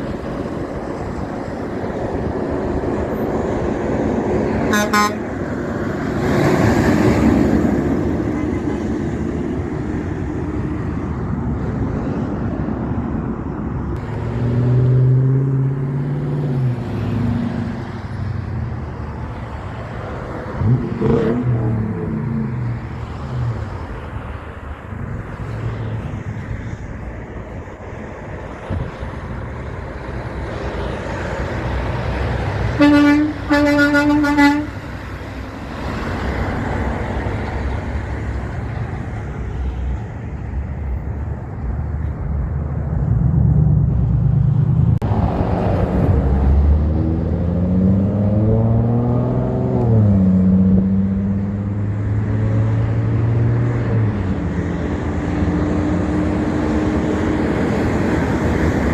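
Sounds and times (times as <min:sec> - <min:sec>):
heavy trucks passing: 0:00.0 - 0:58.9
truck air horn blasts: 0:04.6 - 0:05.5, 0:32.6 - 0:35.0.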